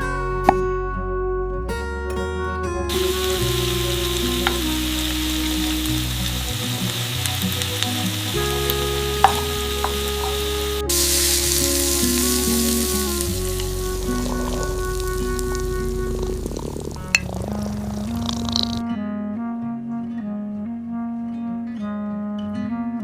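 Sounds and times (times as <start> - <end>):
soft background music: 0.0 - 23.0
steady sizzling hiss: 2.9 - 18.8.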